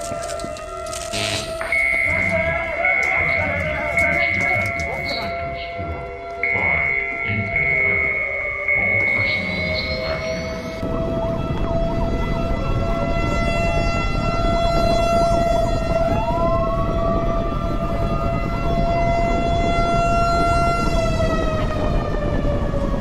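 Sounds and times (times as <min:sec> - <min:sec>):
jet engine whine: 0:00.0 - 0:13.3.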